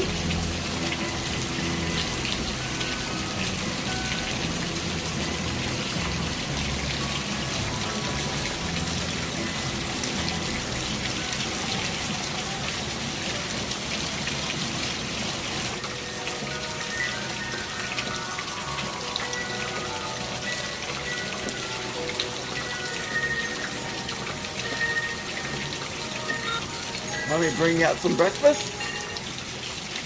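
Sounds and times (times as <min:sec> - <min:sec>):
music playing: 0:00.0 - 0:29.8
steady rain falling: 0:00.0 - 0:30.0.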